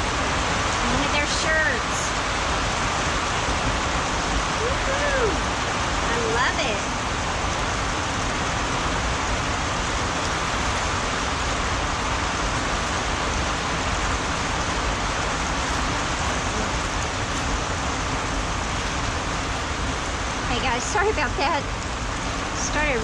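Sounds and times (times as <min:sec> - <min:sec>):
heavy rain on a roof: 0:00.0 - 0:23.0.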